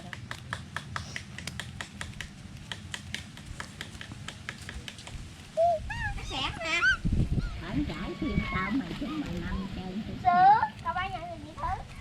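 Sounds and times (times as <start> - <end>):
rapid light clicks and taps: 0.0 - 5.4.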